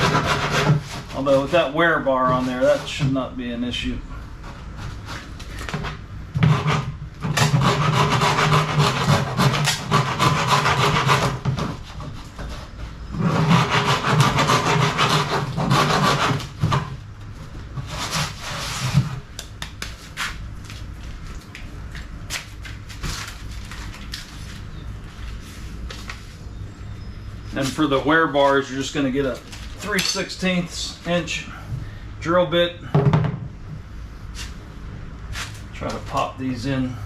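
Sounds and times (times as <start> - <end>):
hand file rasping on plastic: 0.0 - 1.6, 6.4 - 16.8.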